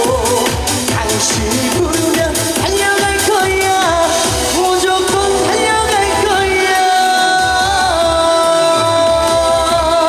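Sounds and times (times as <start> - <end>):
sliding melody over steady beat: 0.0 - 10.0.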